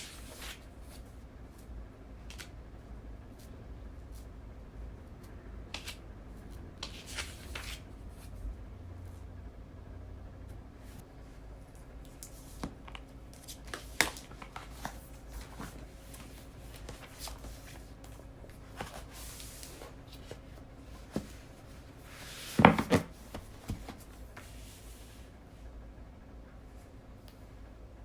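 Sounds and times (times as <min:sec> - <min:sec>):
paper rustling: 0:00.0 - 0:01.1, 0:06.8 - 0:07.8, 0:12.2 - 0:24.6.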